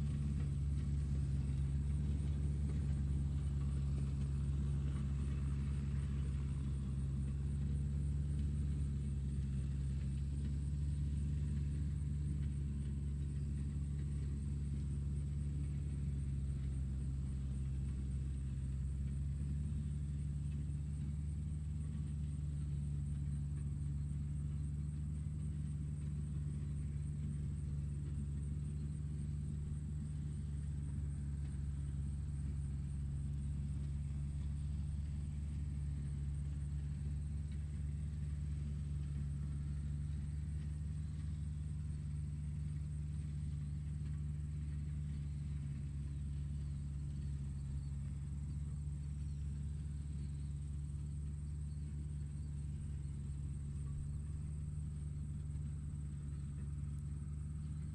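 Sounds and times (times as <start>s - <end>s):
tractor engine droning: 0.0s - 57.9s
faint high whine: 22.1s - 57.9s.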